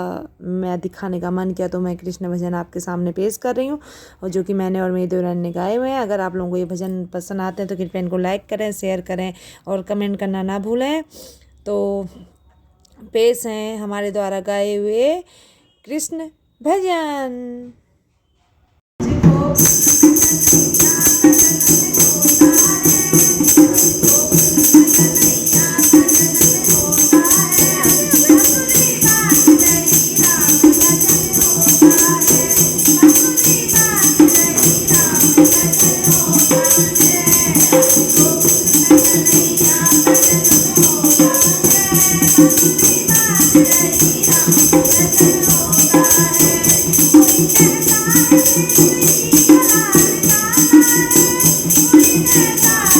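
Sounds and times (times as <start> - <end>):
jingling hand percussion: 19.0 - 52.9
women singing devotional song: 19.0 - 52.9.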